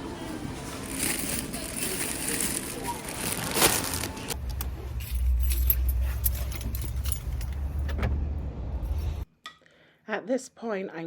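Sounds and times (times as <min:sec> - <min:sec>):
keys jangling: 0:04.9 - 0:07.8.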